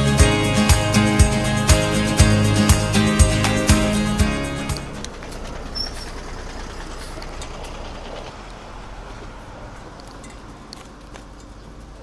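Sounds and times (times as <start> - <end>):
motor vehicle rushing noise: 0.0 - 12.0.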